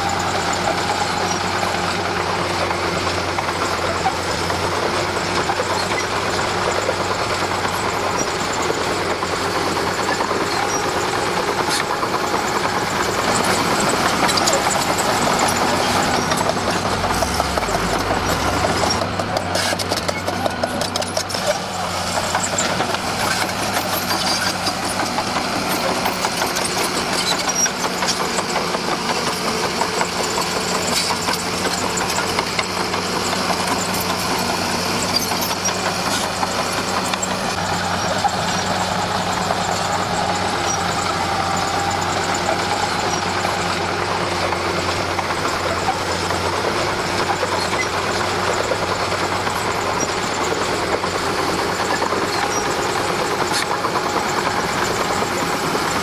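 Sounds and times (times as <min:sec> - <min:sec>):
bulldozer diesel engine drone: 0:00.0 - 0:56.0.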